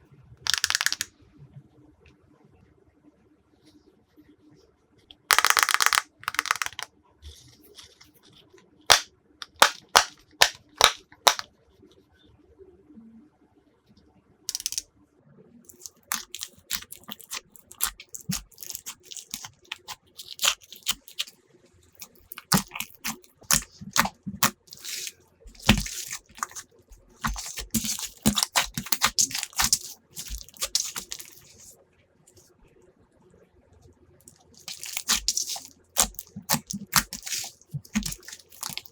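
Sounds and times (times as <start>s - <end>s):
slime clicking and popping: 0.5s - 1.1s, 5.3s - 6.9s, 8.9s - 11.4s, 14.5s - 14.8s, 15.7s - 21.3s, 22.0s - 31.7s, 34.3s - 38.9s.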